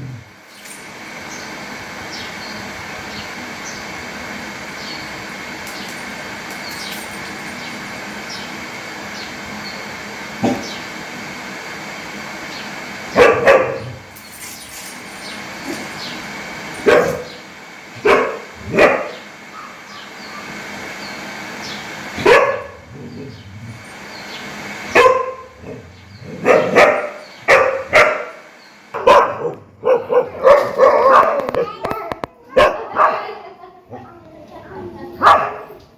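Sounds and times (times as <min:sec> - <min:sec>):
dog barking: 0:13.2 - 0:14.0, 0:16.8 - 0:17.4, 0:18.0 - 0:20.6, 0:22.2 - 0:22.8, 0:24.9 - 0:25.8, 0:26.4 - 0:28.4, 0:29.0 - 0:31.7, 0:32.5 - 0:33.4, 0:35.2 - 0:35.8.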